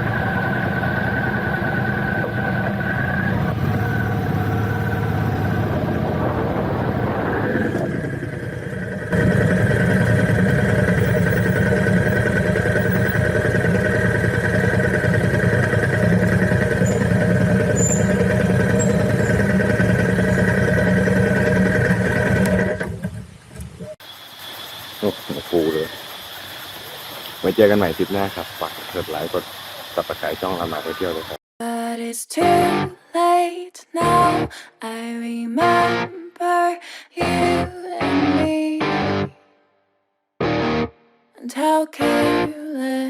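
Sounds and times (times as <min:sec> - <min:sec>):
car engine running: 0:00.0 - 0:24.0
road noise: 0:00.0 - 0:31.4.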